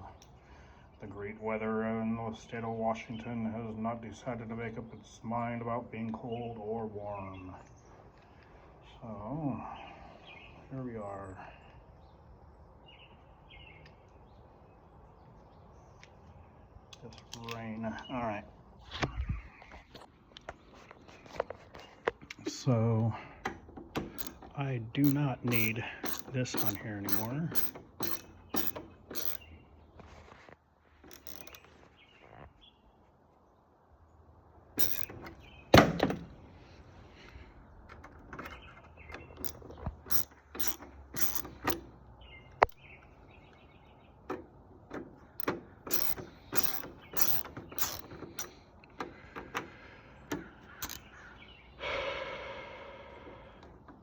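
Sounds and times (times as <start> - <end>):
metal lock parts clicking: 16.9 - 17.9, 23.4 - 29.5, 31.1 - 31.6, 34.8 - 36.3, 37.9 - 41.9, 44.3 - 49.7, 50.3 - 51.1.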